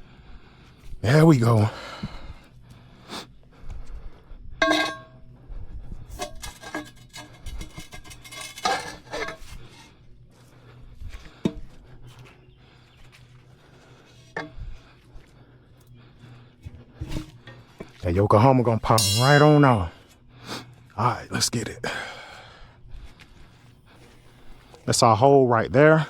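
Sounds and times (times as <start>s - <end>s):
tire bar clanking and scraping: 4.6s - 5.2s, 6.1s - 9.8s
sharp metal knocks: 19.0s - 19.9s.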